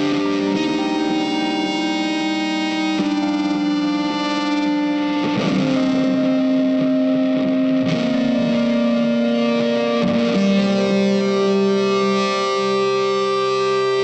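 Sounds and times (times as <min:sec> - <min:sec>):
distorted guitar notes: 0:00.0 - 0:14.0.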